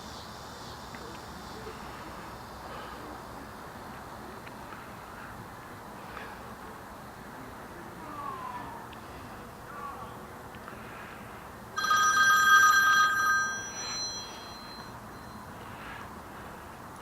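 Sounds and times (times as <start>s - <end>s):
bell ringing in a rapid trill: 11.8s - 15.3s.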